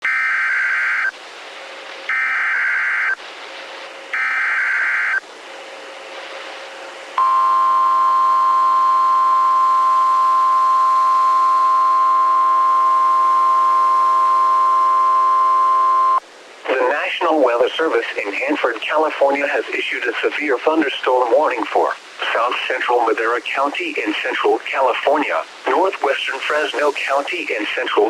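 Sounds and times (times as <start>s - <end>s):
steady attention tone: 7.2s - 19.6s
faint hiss: 16.2s - 28.0s.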